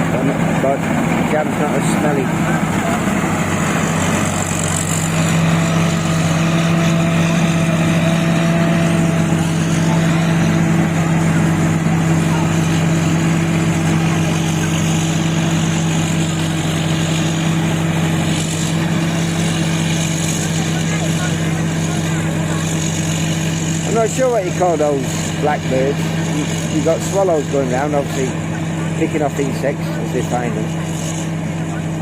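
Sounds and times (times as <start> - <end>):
combine harvester diesel engine: 0.0 - 32.0.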